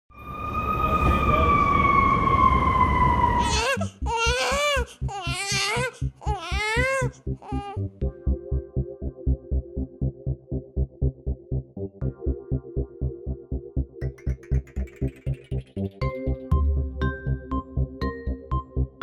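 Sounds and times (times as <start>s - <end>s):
steady low beat: 4.0s - 19.0s.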